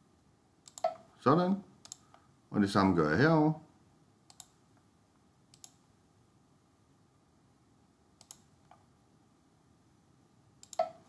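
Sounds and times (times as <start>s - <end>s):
computer mouse clicks: 0.6s - 1.1s, 1.8s - 2.2s, 4.3s - 4.9s, 5.5s - 5.8s, 8.2s - 8.9s, 10.6s - 11.0s.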